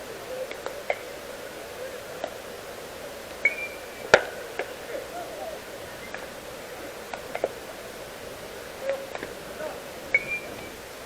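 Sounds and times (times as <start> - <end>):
faint clicks: 0.0 - 11.0
hum of distant voices: 0.0 - 11.0
sharp crack: 3.3 - 5.2.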